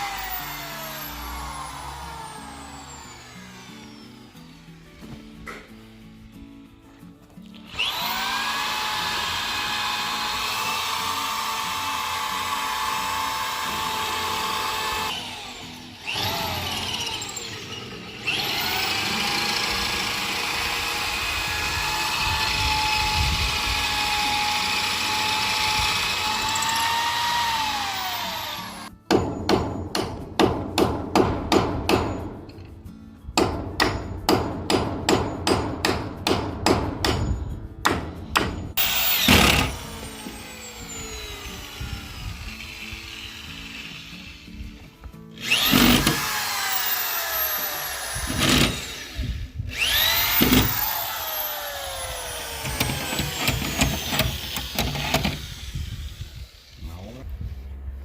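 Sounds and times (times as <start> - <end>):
power drill motor whining: 0.0 - 5.5, 7.6 - 28.9, 38.8 - 56.9.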